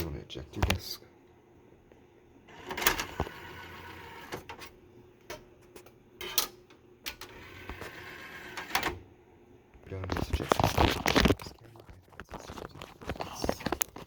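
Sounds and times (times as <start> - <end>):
disc tray motor whirring: 2.4 - 4.8, 7.1 - 9.1.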